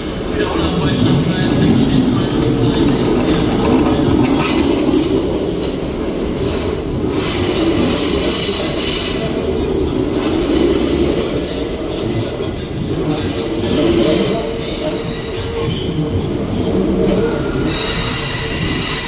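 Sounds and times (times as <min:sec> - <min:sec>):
train rolling rumble: 0:00.0 - 0:19.0
train wheels squealing: 0:17.1 - 0:19.0.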